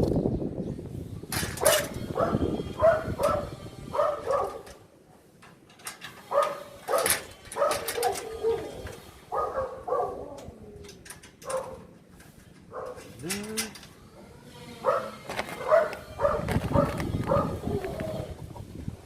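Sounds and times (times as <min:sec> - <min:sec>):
dog barking: 0:01.6 - 0:04.7, 0:06.3 - 0:08.7, 0:09.3 - 0:10.4, 0:11.4 - 0:11.9, 0:12.7 - 0:13.2, 0:14.8 - 0:17.8.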